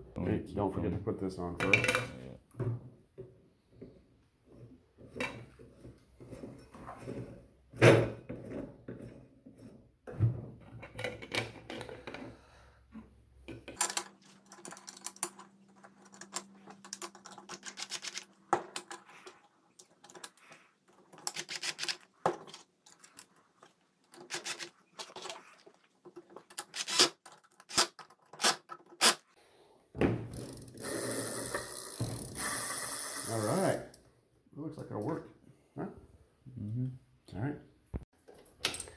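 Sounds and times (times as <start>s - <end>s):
metal parts and tools clinking: 13.5s - 29.2s, 38.3s - 38.9s.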